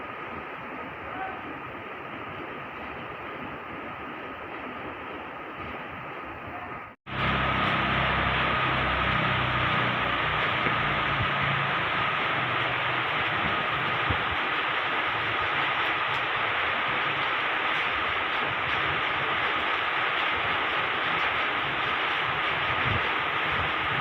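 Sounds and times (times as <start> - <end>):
heavy rain pouring: 6.6 - 24.0.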